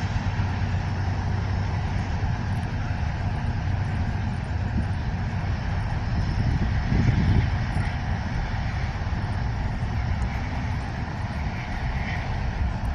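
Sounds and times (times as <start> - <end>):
train wheels rumbling on track: 0.0 - 12.9.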